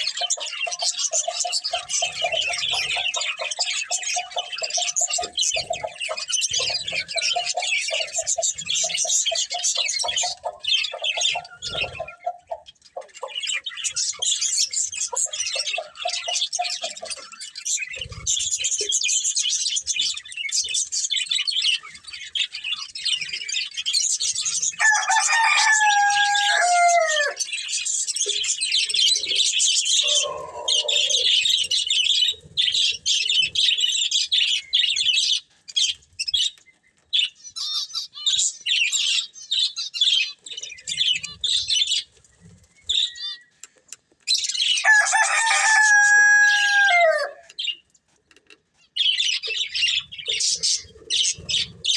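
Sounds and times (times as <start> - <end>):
budgies chattering and chirping: 0.0 - 51.9
drawn-out falling bird call: 24.8 - 27.4, 30.0 - 31.7, 44.8 - 47.6.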